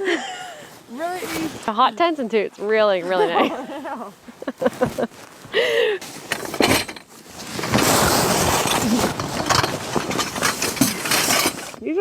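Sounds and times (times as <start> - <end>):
dense rustling: 0.3 - 12.0
metal tent poles clinking: 6.0 - 11.9.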